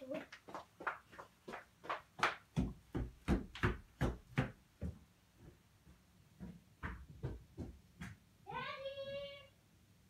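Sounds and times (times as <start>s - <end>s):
footsteps on a floor: 2.6s - 8.2s.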